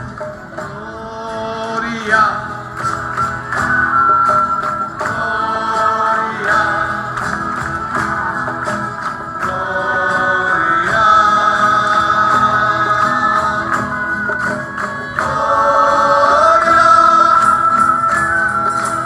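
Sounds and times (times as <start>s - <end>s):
musical accompaniment: 0.0s - 19.0s
choir singing religious song: 5.0s - 18.3s.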